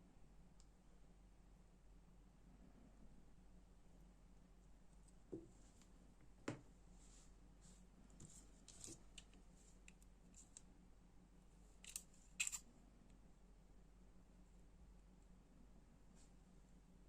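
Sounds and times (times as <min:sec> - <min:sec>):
small metal parts clicking: 0:11.8 - 0:12.6.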